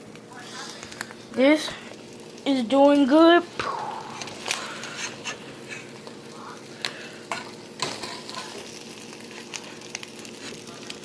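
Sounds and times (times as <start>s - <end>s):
omelet sizzling in a frying pan: 0.0s - 11.0s.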